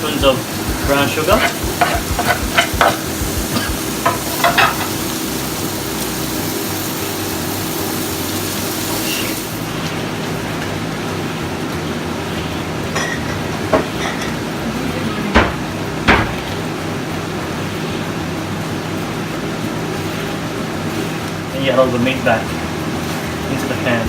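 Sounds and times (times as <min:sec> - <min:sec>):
vegetables sizzling in a pan: 0:00.0 - 0:09.9.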